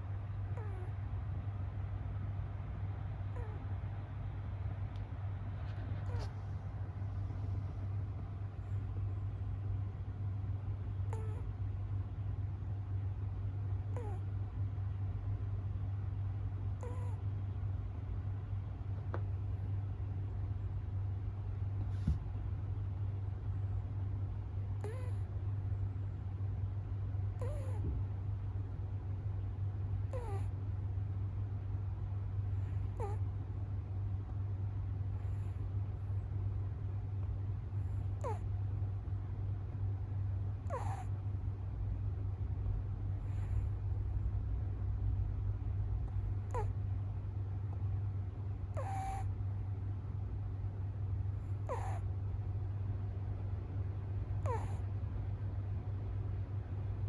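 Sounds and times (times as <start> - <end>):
steady low hum: 0.0 - 57.0
cat meowing: 16.8 - 17.2, 48.7 - 49.2, 54.4 - 54.8
kitten snoring whistle: 30.1 - 30.5, 40.6 - 41.1, 48.7 - 49.3, 51.6 - 52.0, 54.4 - 54.8.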